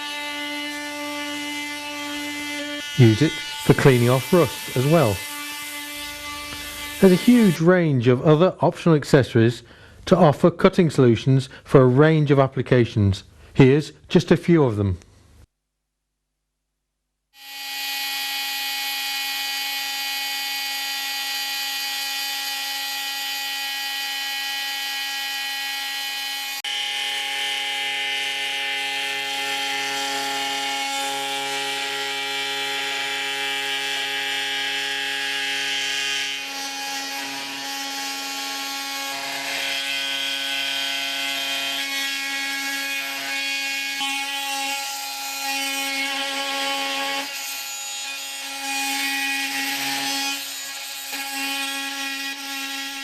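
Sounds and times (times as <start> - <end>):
oscillating multi-tool cutting: 0.0 - 7.6, 17.4 - 53.0.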